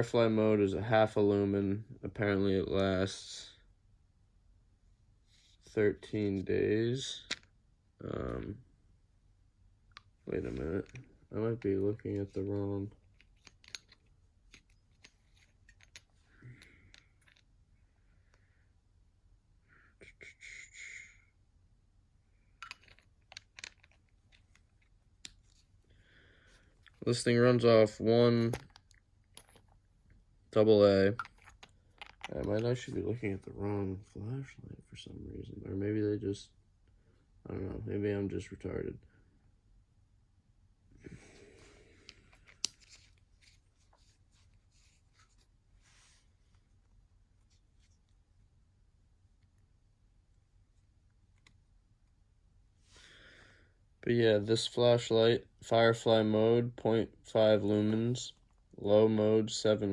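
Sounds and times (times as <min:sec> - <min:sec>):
soft rustle: 0:04.9 - 0:06.6, 0:41.2 - 0:48.6.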